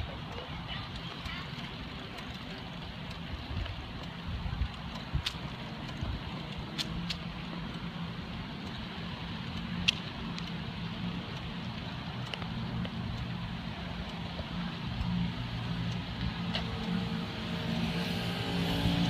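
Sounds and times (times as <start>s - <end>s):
car engine and road hum: 0.0s - 19.0s
faint clicks: 0.3s - 7.9s, 11.3s - 13.4s.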